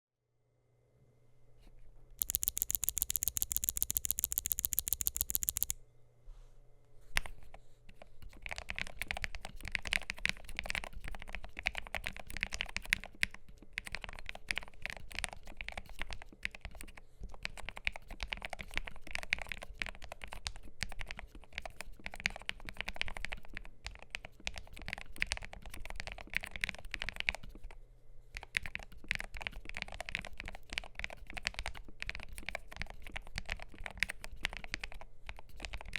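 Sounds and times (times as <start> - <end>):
keyboard typing: 2.2 - 5.8, 8.3 - 27.7, 28.4 - 35.9
rapid high ticks: 2.2 - 5.8.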